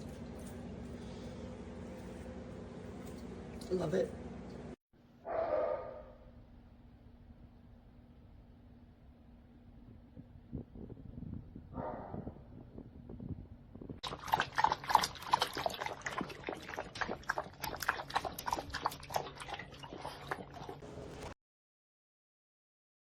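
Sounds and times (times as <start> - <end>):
dog lapping water: 14.0 - 21.4.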